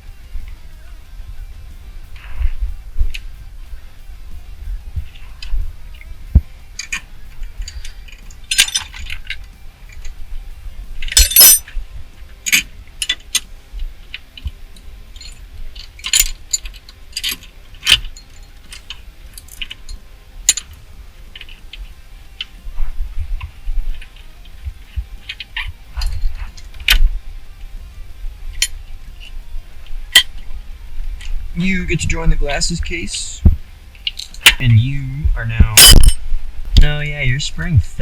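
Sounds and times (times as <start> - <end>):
screwdriver clinking on metal parts: 6.8 - 10.2, 11.0 - 11.8, 15.1 - 20.8.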